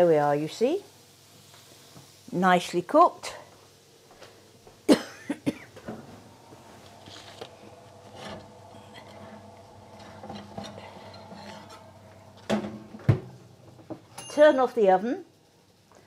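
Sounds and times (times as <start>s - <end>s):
steady appliance hum: 0.0s - 16.0s
faint scrapes and rustles: 6.0s - 12.5s
pan and utensils knocking: 10.0s - 14.7s.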